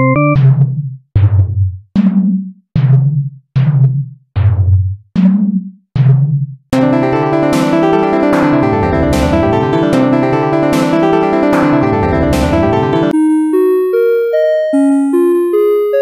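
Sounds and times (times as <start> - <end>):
sustained keyboard chord: 0.0 - 0.4, 6.8 - 16.0
timpani-like drum hits: 6.8 - 13.1.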